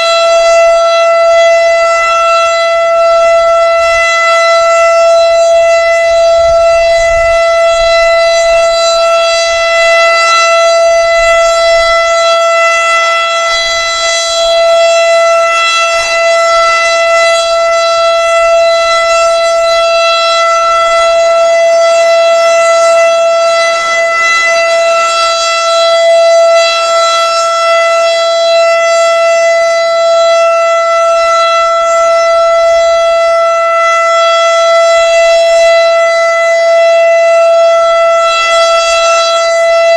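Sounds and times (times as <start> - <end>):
warning siren steady tone: 0.0 - 39.9
wind rumble on microphone: 5.0 - 12.2.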